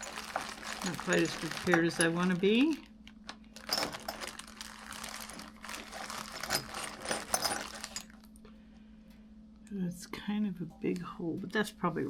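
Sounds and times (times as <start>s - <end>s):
hand tools clicking and clattering: 0.0s - 2.8s, 3.6s - 4.4s, 5.3s - 8.2s.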